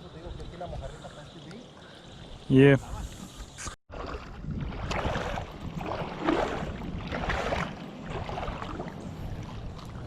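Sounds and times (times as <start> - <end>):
water sloshing and splashing: 3.1 - 10.0.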